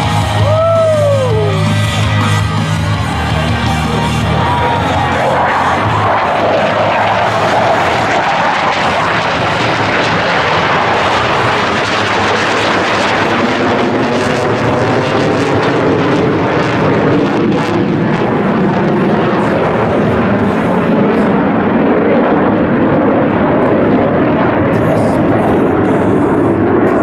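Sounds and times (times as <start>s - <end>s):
jets roaring overhead: 0.0s - 27.0s.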